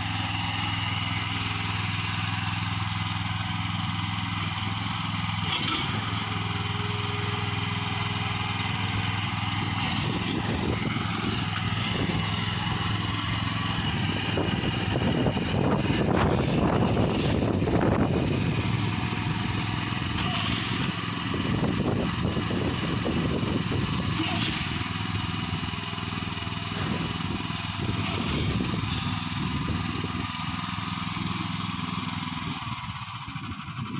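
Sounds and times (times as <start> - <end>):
small gasoline engine running: 0.0 - 33.9.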